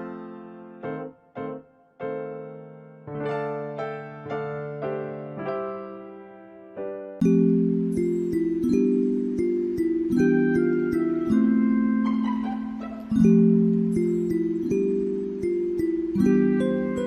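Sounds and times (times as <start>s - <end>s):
gentle piano tune: 0.0s - 17.0s
bright high chiming notes: 7.2s - 17.0s.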